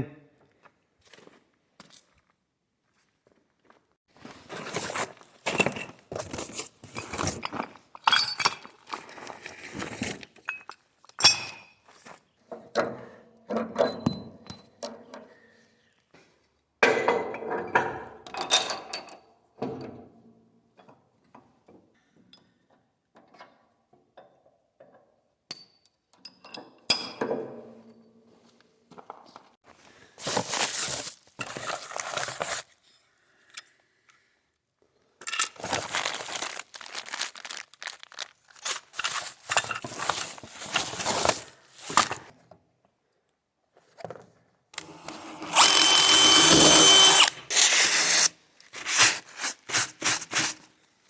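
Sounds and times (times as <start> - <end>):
metal tools clinking and knocking: 7.0 - 9.2.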